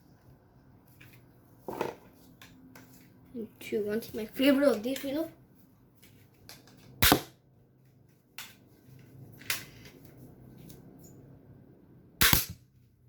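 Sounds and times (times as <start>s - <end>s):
toy blaster shot: 7.0s - 7.3s, 12.2s - 12.6s.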